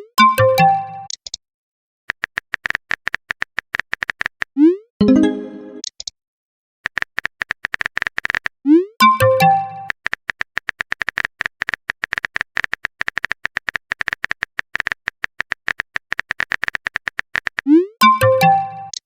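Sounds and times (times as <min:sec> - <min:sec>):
phone keyboard typing clicks: 0:02.1 - 0:04.5, 0:06.9 - 0:19.0
chiming message alert: 0:05.0 - 0:05.8, 0:09.0 - 0:09.9, 0:18.0 - 0:19.0.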